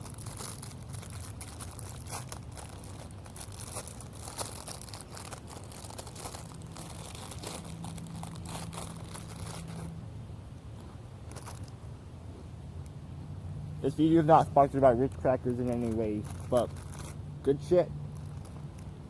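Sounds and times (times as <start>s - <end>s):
plastic packaging crinkling: 0.0s - 9.9s, 11.2s - 11.8s, 14.4s - 17.2s, 18.0s - 19.0s.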